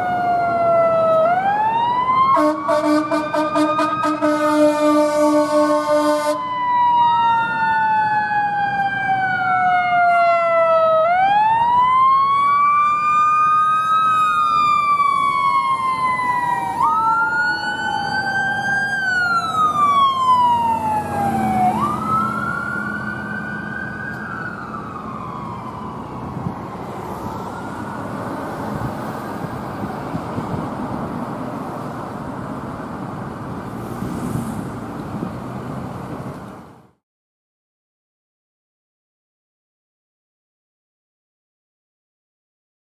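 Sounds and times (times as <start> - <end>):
emergency sirens wailing: 0.0 - 37.0
steady road noise: 0.0 - 37.0
fire engine air horn blast: 2.3 - 6.5.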